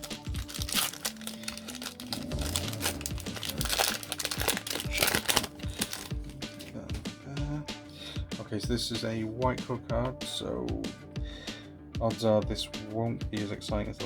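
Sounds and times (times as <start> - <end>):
foil wrapper crinkling: 0.0 - 6.7
quiet background music: 0.0 - 14.0.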